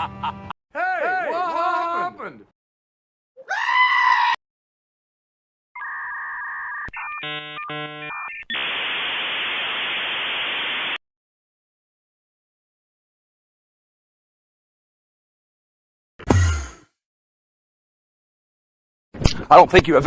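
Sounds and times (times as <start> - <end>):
pitched vocal cry: 0.7 - 2.4, 3.4 - 4.4
two-tone electronic beep: 5.8 - 8.6
switching electronic tones: 5.8 - 10.8
steady electronic hiss: 8.5 - 11.0.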